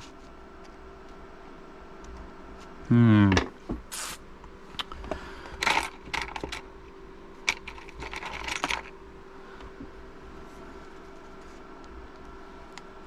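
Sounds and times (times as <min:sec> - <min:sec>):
plastic parts clicking and scraping: 0:05.6 - 0:06.6, 0:07.5 - 0:08.9.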